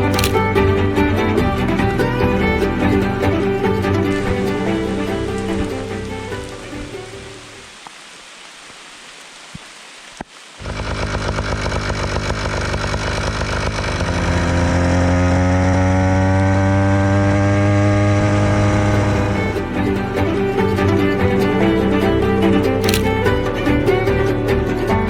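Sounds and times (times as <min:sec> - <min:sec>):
faint hiss: 0:04.5 - 0:10.6
small two-stroke engine buzzing: 0:10.6 - 0:19.6.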